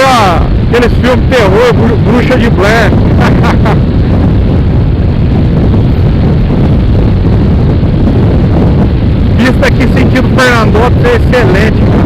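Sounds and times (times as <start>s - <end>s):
road noise: 0.0s - 12.0s
wind buffeting microphone: 0.0s - 12.0s.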